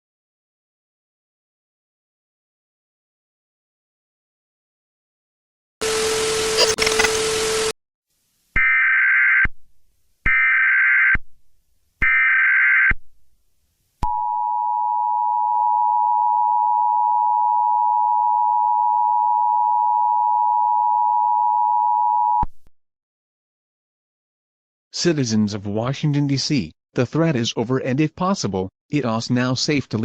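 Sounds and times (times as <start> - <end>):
digital data bursts: 6.5 - 7.7.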